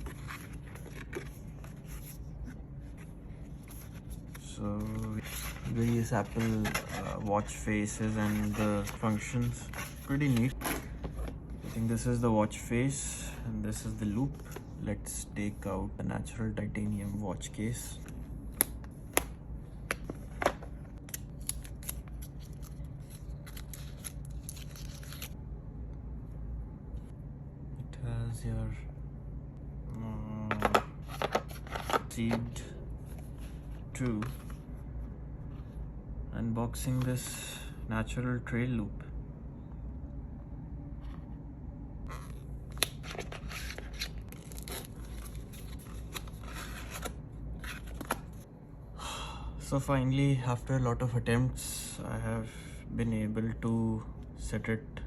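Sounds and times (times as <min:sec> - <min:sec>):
packaging rustling and scraping: 0:00.0 - 0:12.0, 0:31.0 - 0:32.2, 0:42.1 - 0:48.4
low steady hum: 0:00.0 - 0:55.0.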